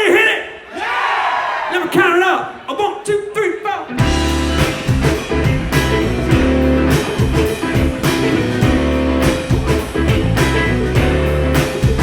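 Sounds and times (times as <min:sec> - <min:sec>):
bass guitar: 0:03.9 - 0:12.0
electric guitar: 0:03.9 - 0:12.0
drum kit beat: 0:04.0 - 0:12.0.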